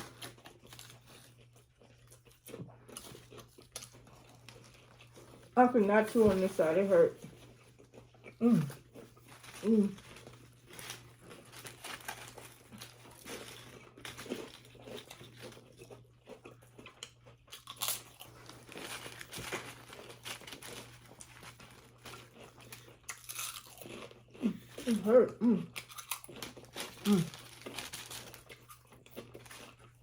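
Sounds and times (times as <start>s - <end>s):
food packaging crinkling: 0.0s - 25.0s, 25.8s - 30.0s
crunching of eating: 0.0s - 30.0s
person humming: 8.4s - 8.7s, 9.6s - 10.0s, 24.8s - 25.7s, 27.1s - 27.3s.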